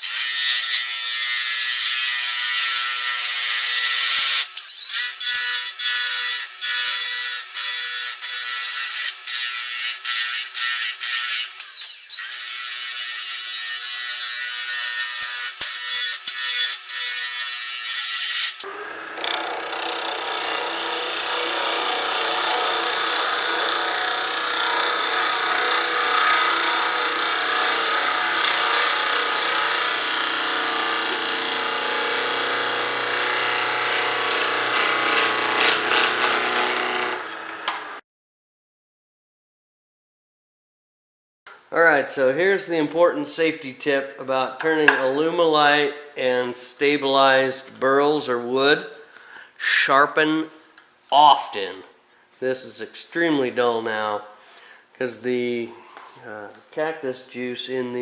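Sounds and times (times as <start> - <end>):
lathe gouge scraping wood: 0.0 - 18.6, 19.2 - 37.3.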